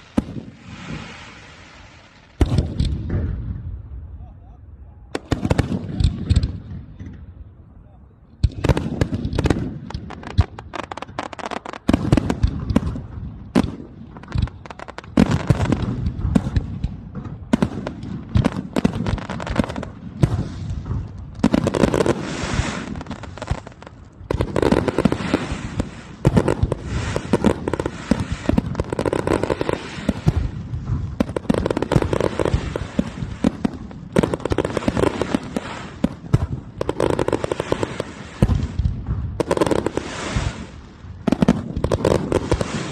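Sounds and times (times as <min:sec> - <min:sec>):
fireworks bursting with crackle: 0:00.0 - 0:04.2, 0:05.0 - 0:07.5, 0:08.4 - 0:42.9.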